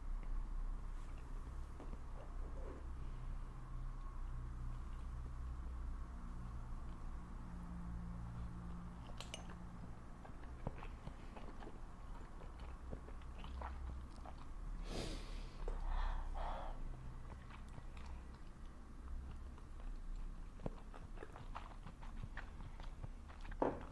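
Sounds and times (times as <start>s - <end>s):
chewing and biting food: 3.8s - 14.8s, 16.8s - 23.9s.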